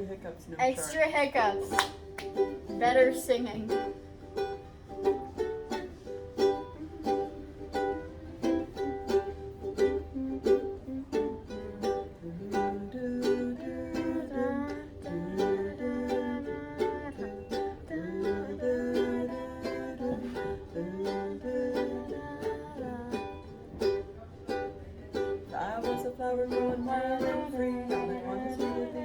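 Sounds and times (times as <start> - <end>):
strummed string instrument: 0.6 - 29.0
held melody line: 2.3 - 29.0.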